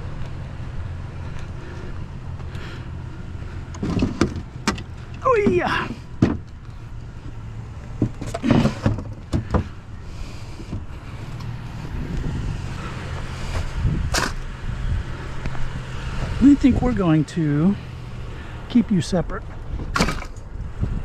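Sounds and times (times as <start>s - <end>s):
truck engine idling: 0.0s - 21.0s
scrap knocking and clunking: 3.7s - 6.5s, 7.8s - 9.8s, 10.5s - 11.6s.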